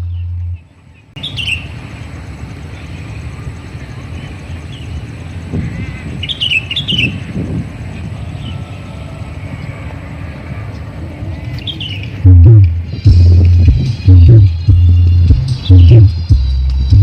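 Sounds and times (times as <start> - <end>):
small birds chirping: 0.0 - 16.3
loud music with heavy bass: 12.2 - 17.0.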